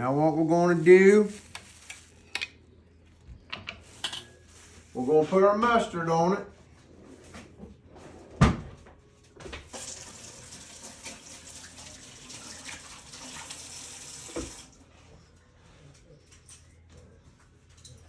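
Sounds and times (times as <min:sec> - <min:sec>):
water running from a tap: 0:09.7 - 0:14.8.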